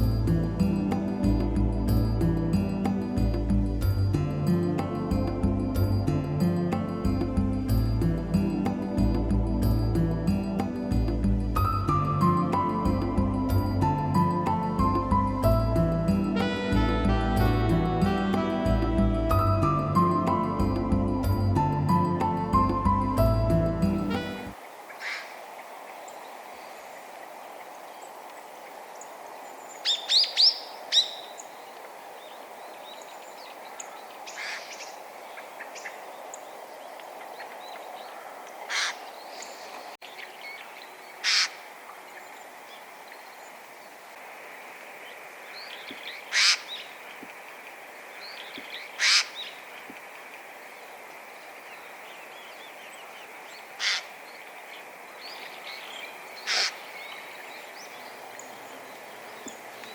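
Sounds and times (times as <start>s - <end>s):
steady outdoor background hiss: 0.0s - 59.9s
jay giving harsh screech calls: 38.7s - 39.0s, 41.2s - 41.6s, 46.3s - 46.8s, 49.0s - 49.4s, 53.8s - 54.1s, 56.4s - 56.8s.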